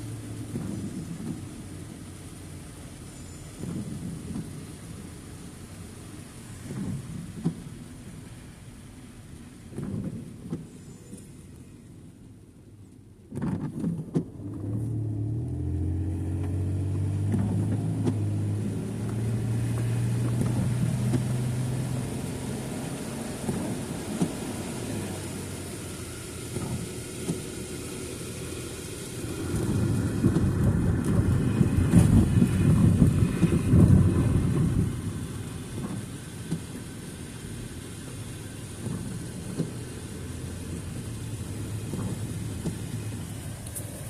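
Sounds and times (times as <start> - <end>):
road noise rushing: 0.0 - 44.0
car engine accelerating: 13.3 - 44.0.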